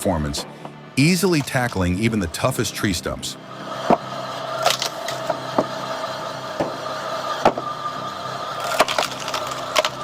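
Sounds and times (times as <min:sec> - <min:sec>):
log splitter motor humming: 0:03.5 - 0:10.0
wood splitting cracks: 0:04.6 - 0:05.2, 0:08.6 - 0:10.0.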